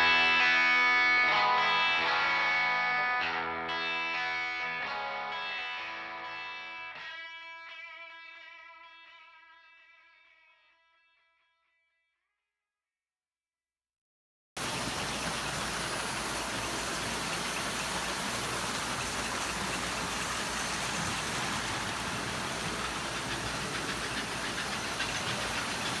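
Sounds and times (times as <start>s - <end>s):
toy train whirring and clattering: 14.6s - 26.0s.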